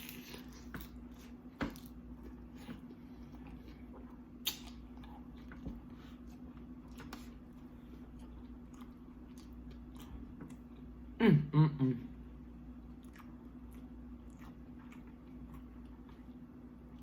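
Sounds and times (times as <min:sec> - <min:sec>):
steady low hum: 0:00.0 - 0:17.0
wet chewing and lip smacks: 0:04.4 - 0:05.6, 0:12.8 - 0:17.0.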